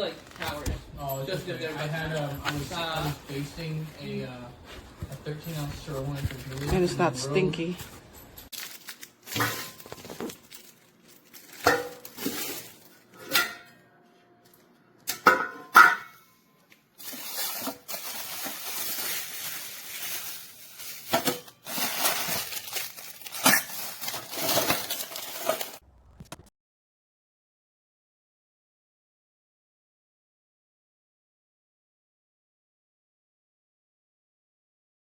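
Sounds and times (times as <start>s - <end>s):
bubble wrap rustling: 0.0s - 13.2s, 17.0s - 26.5s.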